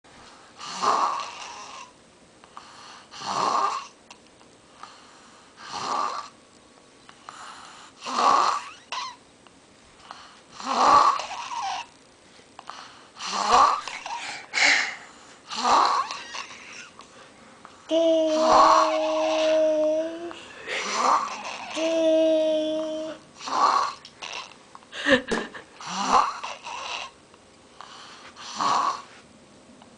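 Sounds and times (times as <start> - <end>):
loud snoring: 0.6 - 1.9, 3.1 - 4.0, 5.6 - 6.4, 7.4 - 9.2, 10.6 - 11.9, 13.2 - 14.9, 15.5 - 16.6, 18.3 - 19.6, 20.7 - 21.9, 23.4 - 24.6, 25.8 - 27.2, 28.4 - 29.1
quiet breathing: 2.4 - 3.2, 4.7 - 5.7, 7.1 - 8.0, 10.0 - 10.6, 12.2 - 17.7, 27.7 - 29.3.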